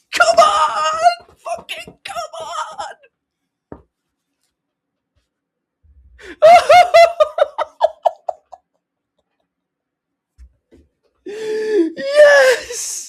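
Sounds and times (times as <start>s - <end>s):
person laughing: 6.2s - 8.7s.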